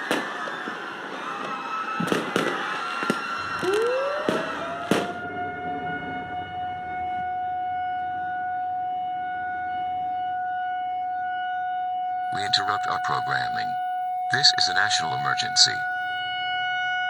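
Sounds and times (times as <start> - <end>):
fireworks bangs and crackling: 0.0 - 5.2
siren wailing: 0.0 - 11.0.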